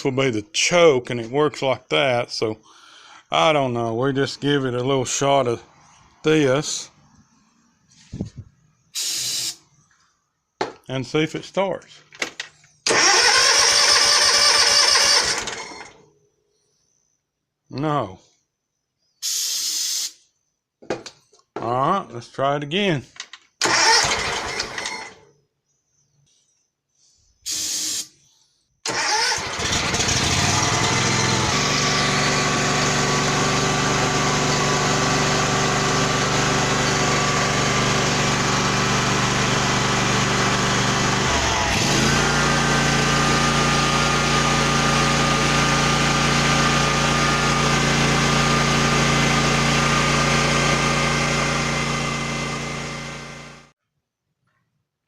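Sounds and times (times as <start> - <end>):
starter cranking: 12.2 - 16.0, 23.3 - 25.2, 28.9 - 31.6
mower engine running: 12.9 - 16.0, 23.6 - 25.2, 28.9 - 53.7.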